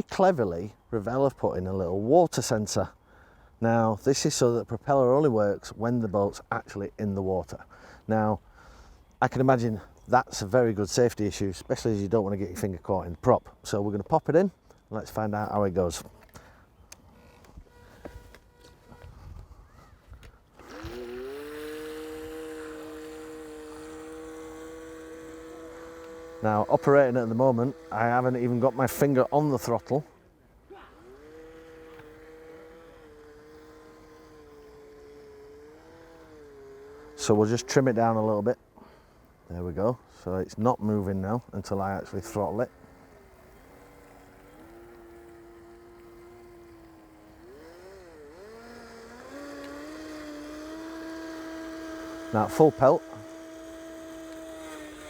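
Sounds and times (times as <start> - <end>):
toy boat electric motor whine: 16.8 - 55.0.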